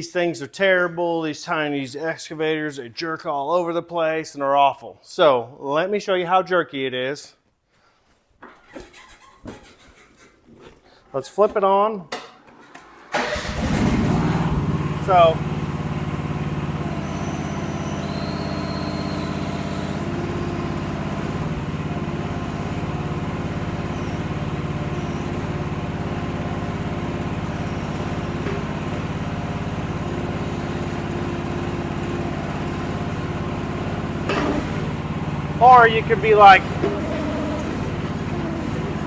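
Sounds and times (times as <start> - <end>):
small engine running steadily: 13.4 - 39.0.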